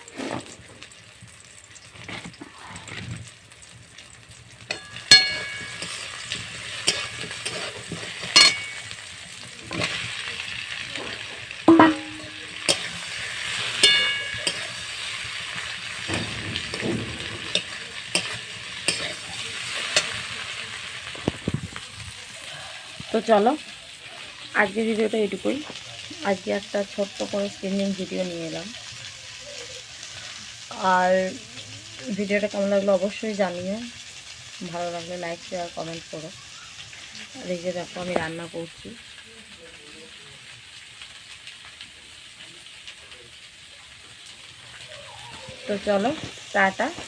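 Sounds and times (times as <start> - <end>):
food sizzling in hot oil: 0.0 - 47.0
metal spatula scraping a pan: 4.7 - 10.3, 10.9 - 21.2
loud clang: 11.7 - 12.5, 16.1 - 17.8.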